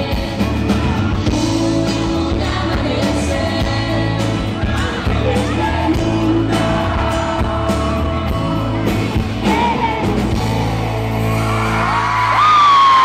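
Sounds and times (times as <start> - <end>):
live pop band music: 0.0 - 13.0
audience screaming and whooping: 9.4 - 13.0.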